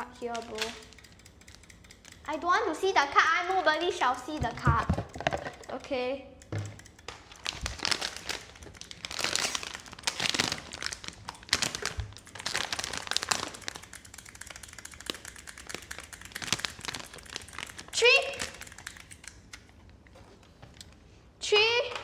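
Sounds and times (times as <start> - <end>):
packaging crinkling and crackling: 0.2 - 1.0, 7.1 - 20.1.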